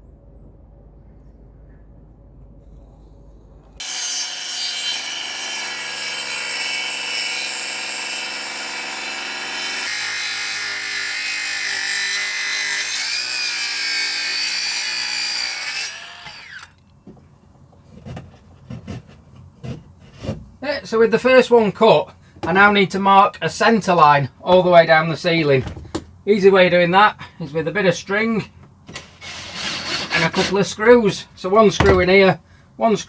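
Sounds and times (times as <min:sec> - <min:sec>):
electric saw cutting timber: 0:03.8 - 0:16.8, 0:28.9 - 0:30.6.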